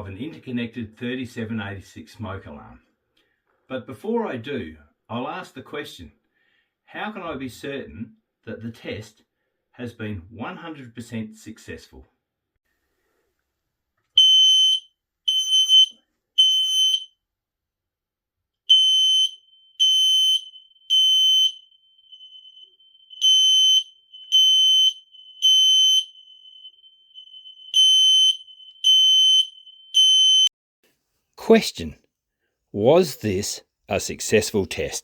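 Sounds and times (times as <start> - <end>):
smoke alarm high-pitched beeps: 14.2 - 17.1, 18.7 - 30.5.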